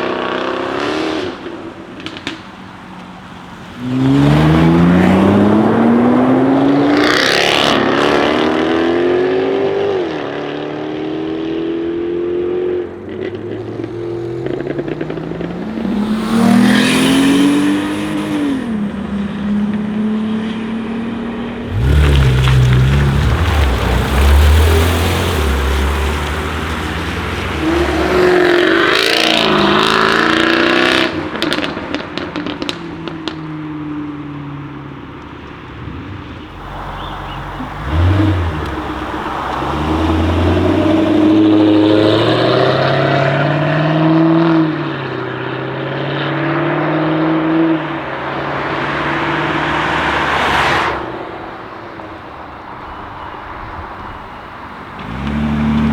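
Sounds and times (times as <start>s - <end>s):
car engine accelerating: 0.0s - 52.6s, 54.1s - 55.9s
exhaust crackles: 21.6s - 33.4s, 35.1s - 43.6s, 54.3s - 55.9s.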